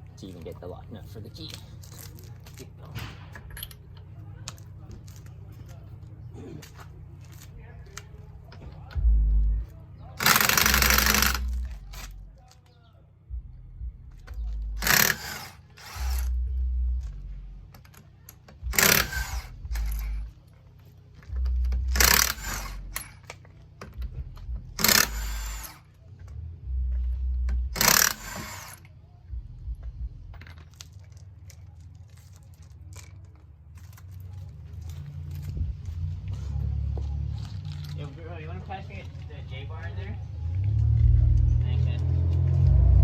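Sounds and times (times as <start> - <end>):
impact wrench bursts: 10.2 - 12.2, 14.3 - 16.5, 17.9 - 20.4, 21.3 - 25.9, 27.5 - 28.9.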